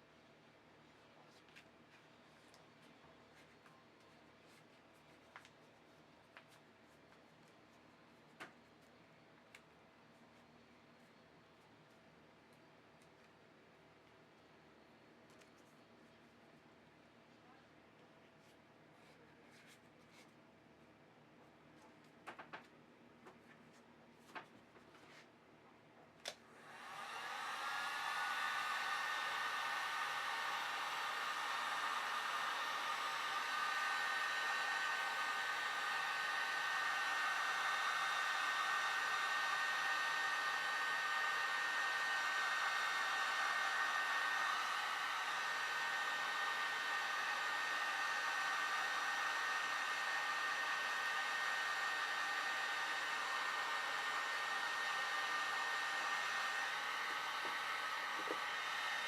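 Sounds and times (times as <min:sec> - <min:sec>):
electric fan motor whining: 0:26.6 - 0:59.0.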